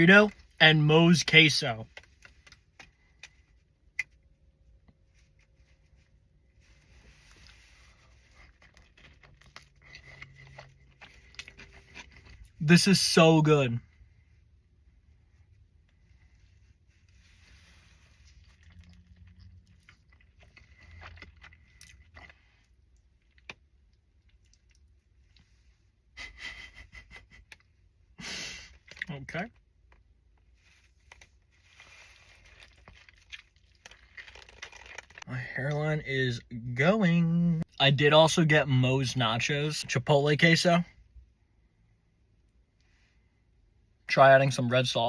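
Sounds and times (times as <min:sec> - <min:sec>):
soft rustle: 0:04.9 - 0:12.4, 0:14.2 - 0:20.8, 0:30.4 - 0:35.2
chewing: 0:08.2 - 0:12.5, 0:18.2 - 0:23.6, 0:31.1 - 0:35.2.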